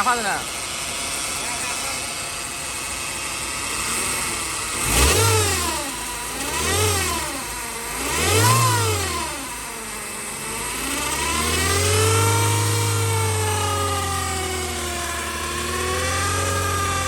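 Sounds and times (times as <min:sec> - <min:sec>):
car engine revving: 0:00.0 - 0:17.0
high transmission whine: 0:00.0 - 0:17.0.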